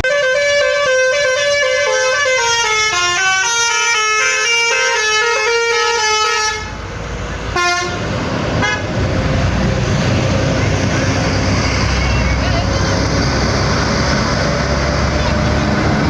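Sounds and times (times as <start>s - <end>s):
musical bus horn melody: 0.0s - 6.8s, 7.5s - 9.0s.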